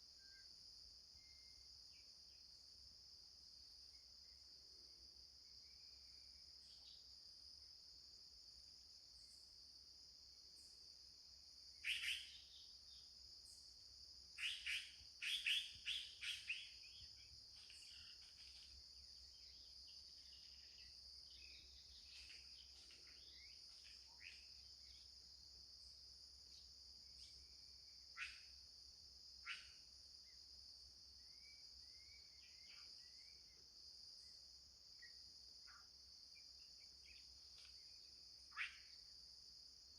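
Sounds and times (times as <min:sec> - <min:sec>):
faint bird chirps: 0:00.0 - 0:02.7, 0:11.8 - 0:13.8, 0:14.4 - 0:25.2, 0:25.8 - 0:28.6, 0:29.4 - 0:30.4, 0:31.2 - 0:39.2
insects chorus: 0:00.0 - 0:39.9.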